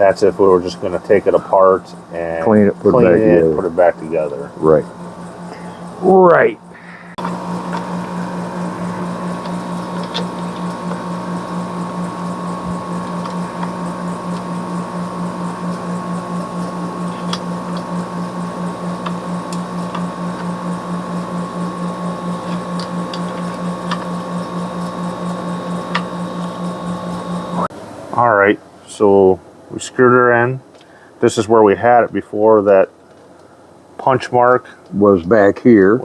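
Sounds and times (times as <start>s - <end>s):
machine hum with fast pulse: 0.0s - 27.7s.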